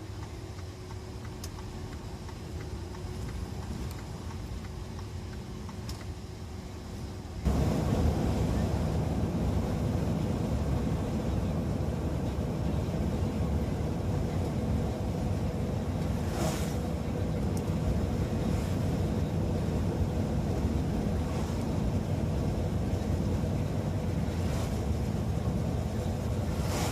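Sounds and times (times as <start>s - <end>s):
hissing wind surges: 7.4s - 26.9s
wind rumbling: 7.4s - 26.9s
heavy rain: 7.5s - 11.2s.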